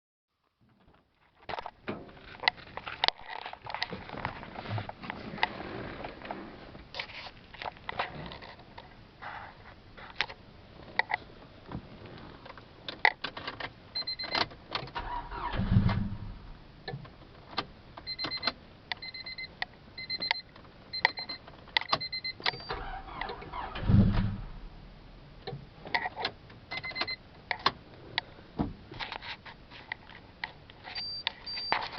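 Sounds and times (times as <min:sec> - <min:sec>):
car engine cranking and dying: 0:14.9 - 0:17.1, 0:22.5 - 0:26.4.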